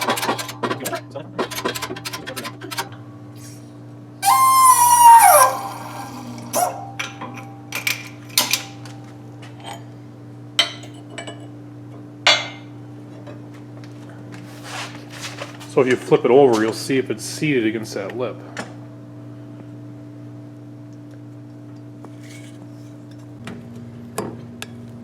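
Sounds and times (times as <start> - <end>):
bearing press squeal: 4.2 - 7.0.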